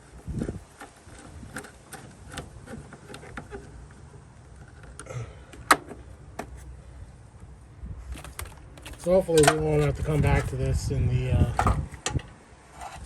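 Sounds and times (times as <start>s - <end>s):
hand tools and metal parts clicking: 0.1s - 6.6s.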